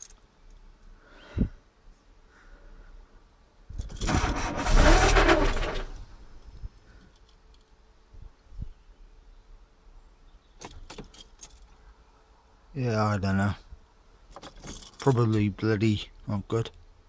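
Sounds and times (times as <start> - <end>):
car starter cranking engine: 3.8 - 6.6.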